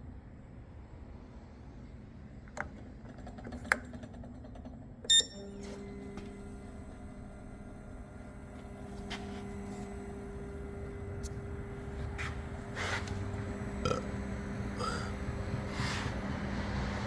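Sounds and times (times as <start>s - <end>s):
cleaning machine humming: 5.4s - 17.0s.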